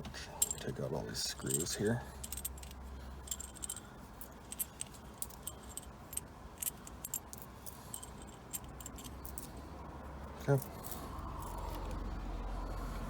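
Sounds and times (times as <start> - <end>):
small metal clicks and clinks: 0.4 - 0.8, 1.4 - 9.6.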